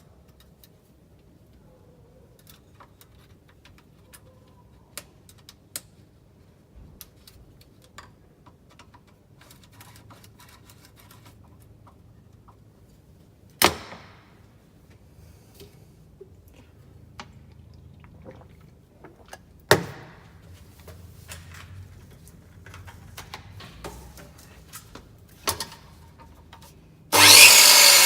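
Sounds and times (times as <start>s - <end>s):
hard parts clicking: 27.1s - 28.0s.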